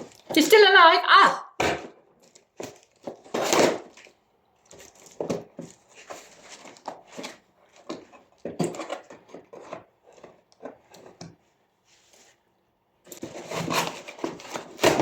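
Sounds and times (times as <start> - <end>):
packaging rustling and scraping: 1.9 - 11.2, 13.0 - 15.0
packaging ripping: 2.3 - 5.2.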